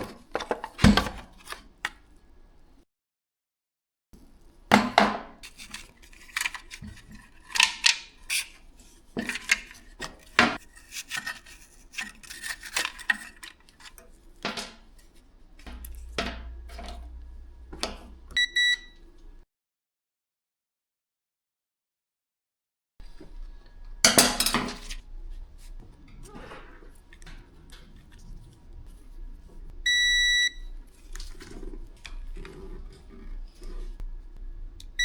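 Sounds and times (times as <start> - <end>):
small hard parts clicking and knocking: 4.7 - 17.2
high electronic beep: 18.4 - 19.0, 29.9 - 30.7.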